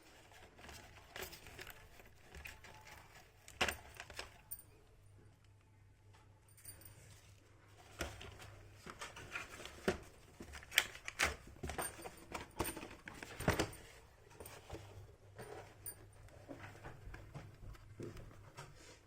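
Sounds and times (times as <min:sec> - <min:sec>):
packaging rustling: 0:00.0 - 0:04.6, 0:07.8 - 0:14.8.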